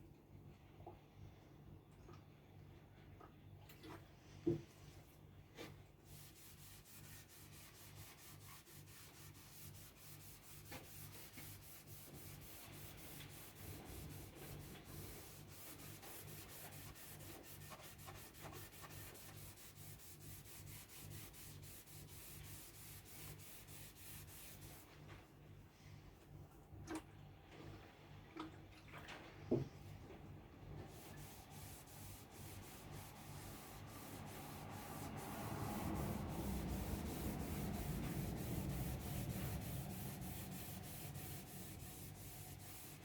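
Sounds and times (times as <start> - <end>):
low steady hum: 0.0 - 43.0
hand rubbing wooden cabinet: 30.8 - 43.0.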